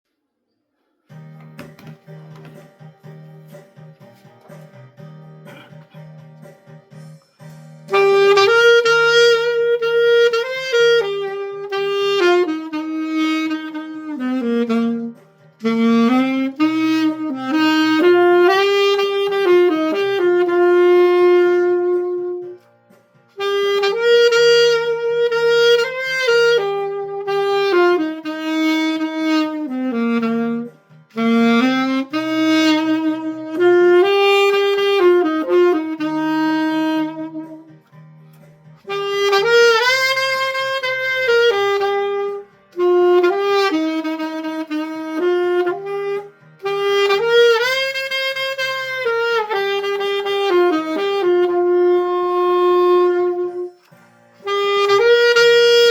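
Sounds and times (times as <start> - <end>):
quiet backing track: 0.1 - 55.9
alto saxophone melody: 7.8 - 22.8, 23.4 - 38.0, 38.8 - 55.9.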